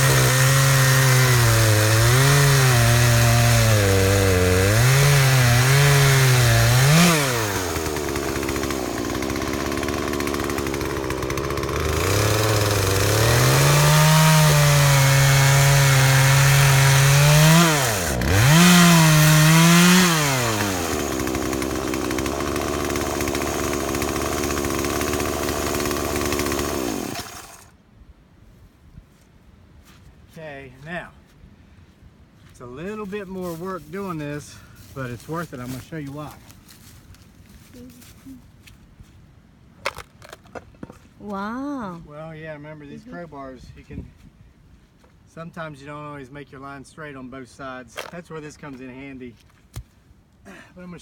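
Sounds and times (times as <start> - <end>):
chainsaw cutting wood: 0.0 - 27.8.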